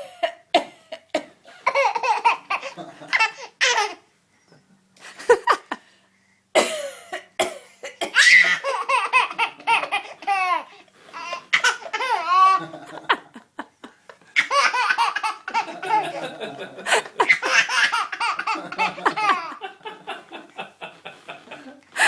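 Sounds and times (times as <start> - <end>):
baby laughing: 1.6 - 4.0, 8.2 - 13.2, 14.4 - 20.6
adult fake coughing: 6.6 - 8.6.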